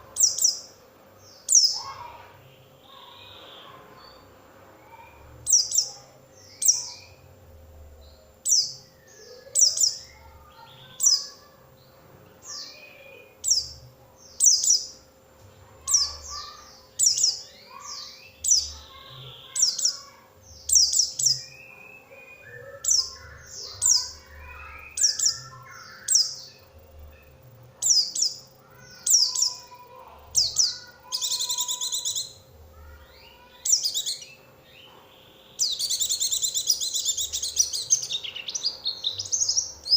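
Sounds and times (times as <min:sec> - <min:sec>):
bird twittering: 0:00.0 - 0:02.2, 0:08.4 - 0:11.5, 0:15.8 - 0:39.9
buzzy bird trill: 0:00.0 - 0:39.9
bird chirps sliding downward: 0:20.8 - 0:26.6.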